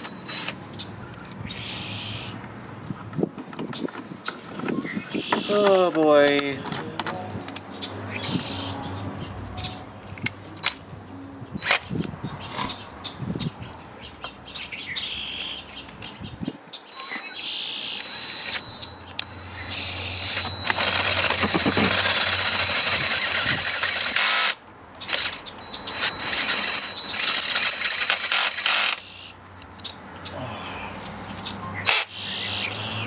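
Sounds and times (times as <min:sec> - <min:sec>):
power drill drilling into steel: 0:18.0 - 0:29.0.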